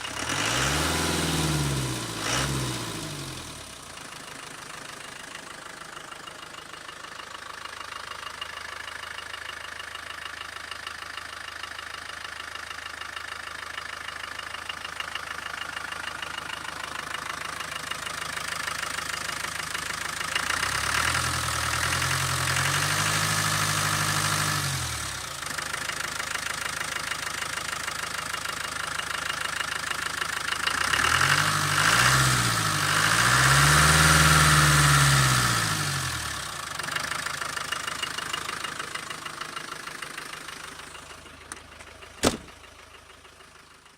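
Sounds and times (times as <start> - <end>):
engine revving: 0.0 - 3.9, 20.4 - 25.4, 30.6 - 41.6
diesel engine idling: 0.0 - 43.9.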